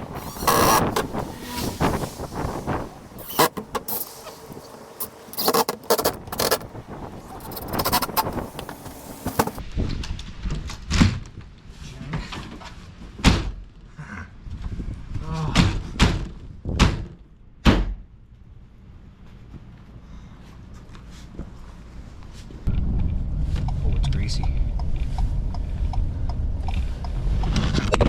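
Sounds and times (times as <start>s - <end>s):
knocks and clatters: 0.0s - 9.6s.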